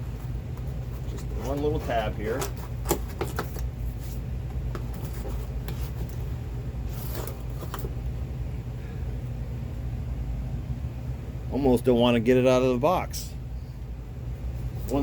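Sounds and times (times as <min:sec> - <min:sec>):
low background hum: 0:00.0 - 0:15.0
cardboard scraping rustle: 0:00.2 - 0:07.9.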